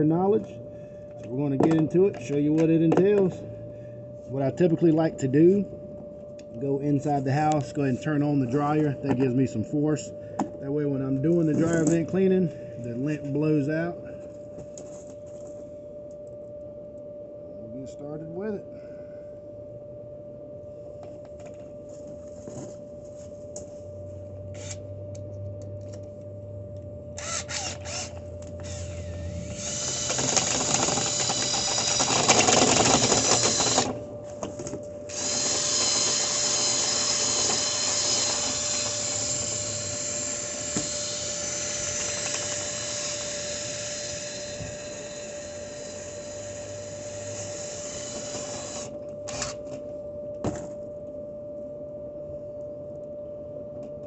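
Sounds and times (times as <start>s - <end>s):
power drill spinning brush in duct: 27.2s - 34.0s, 35.1s - 49.4s.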